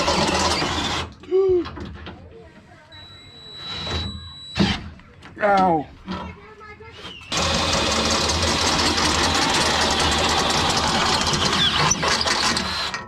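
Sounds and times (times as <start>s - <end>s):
power drill boring through plastic: 0.0s - 1.2s, 7.3s - 13.0s.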